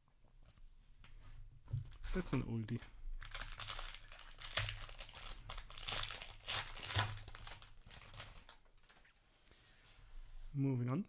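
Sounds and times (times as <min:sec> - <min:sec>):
foil wrapper crinkling and tearing: 0:03.2 - 0:09.1.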